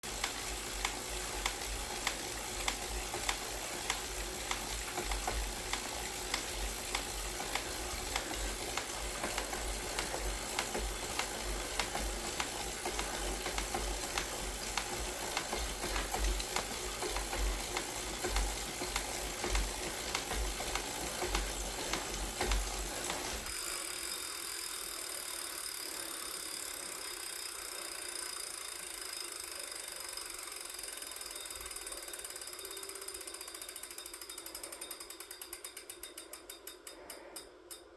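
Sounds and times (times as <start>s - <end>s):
repeated mechanical clicks: 0.0s - 24.2s.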